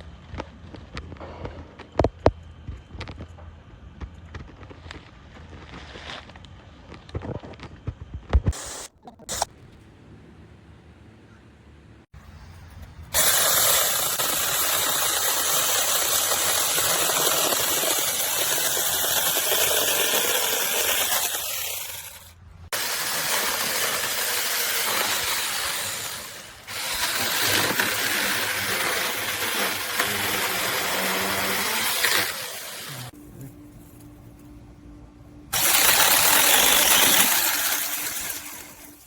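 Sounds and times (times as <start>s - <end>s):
mini chainsaw running: 13.1s - 33.2s, 35.5s - 39.0s.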